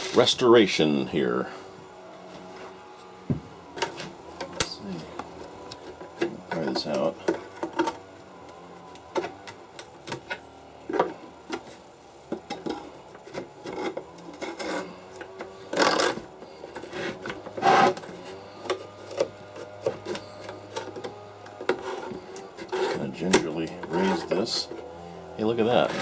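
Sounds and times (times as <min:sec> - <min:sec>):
wood scraping on wood: 0:00.0 - 0:26.0
wood and tool knocking: 0:03.3 - 0:08.0.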